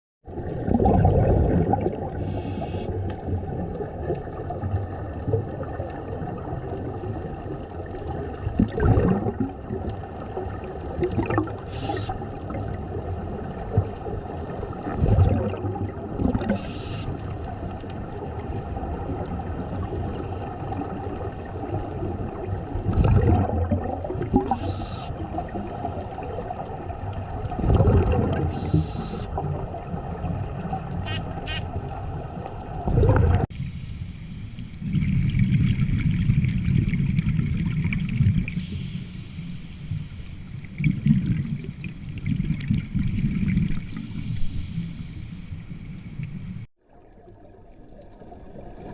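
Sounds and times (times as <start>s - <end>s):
water gurgling and bubbling: 0.3s - 33.5s, 34.8s - 38.8s, 40.5s - 44.2s, 46.0s - 48.9s
underwater rumbling wash: 0.3s - 48.9s
short hissing bursts: 2.2s - 2.9s, 11.6s - 12.2s, 16.5s - 17.2s, 24.5s - 25.2s, 28.5s - 29.4s, 30.7s - 31.7s, 38.6s - 40.4s.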